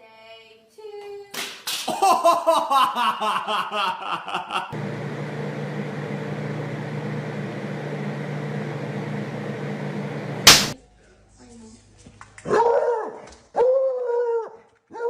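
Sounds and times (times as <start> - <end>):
people laughing: 1.9 - 4.8
steady mechanical hum: 4.8 - 10.8.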